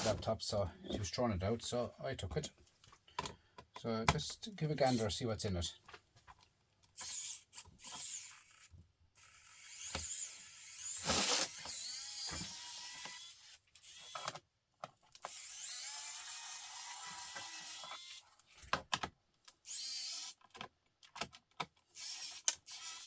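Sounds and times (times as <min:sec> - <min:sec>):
laptop handling creaks and clicks: 0:20.3 - 0:21.9.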